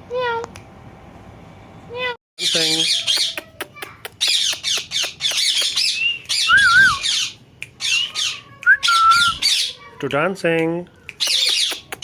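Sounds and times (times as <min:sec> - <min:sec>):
parrot squawking: 0:02.4 - 0:10.0, 0:11.2 - 0:12.0
parrot whistling: 0:04.6 - 0:09.7.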